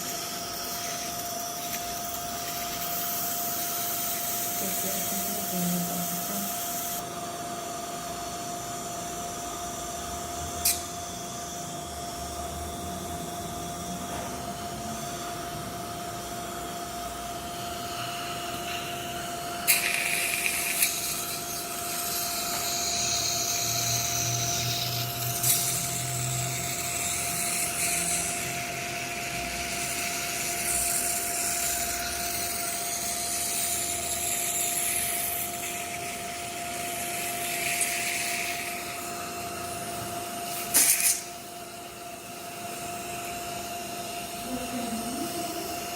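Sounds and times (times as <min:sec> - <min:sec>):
suction hiss: 0:00.0 - 0:07.0, 0:18.6 - 0:41.6
dental drill whining: 0:00.0 - 0:45.9.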